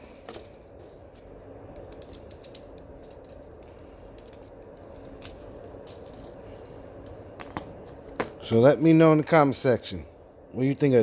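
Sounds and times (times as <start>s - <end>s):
metal clinking: 0.2s - 8.7s.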